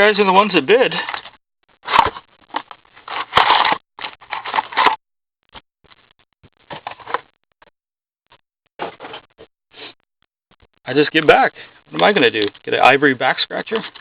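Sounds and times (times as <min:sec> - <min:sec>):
packaging crinkling and tearing: 0:01.8 - 0:05.0.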